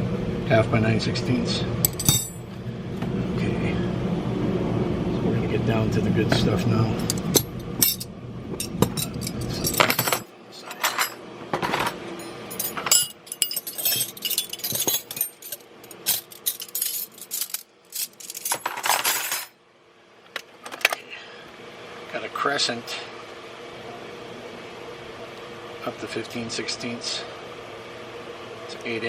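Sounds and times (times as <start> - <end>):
metal tools clinking in toolbox: 1.8 - 2.5, 7.0 - 19.5.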